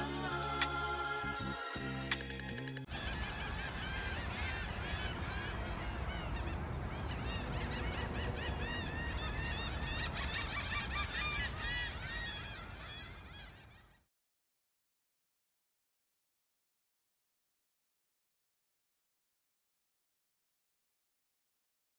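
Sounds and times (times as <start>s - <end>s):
flock of birds calling: 0.0s - 14.0s.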